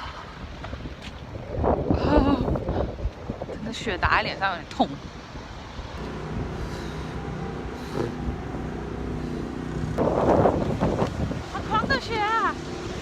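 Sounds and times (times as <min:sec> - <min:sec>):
large vehicle engine running: 0:06.0 - 0:10.3.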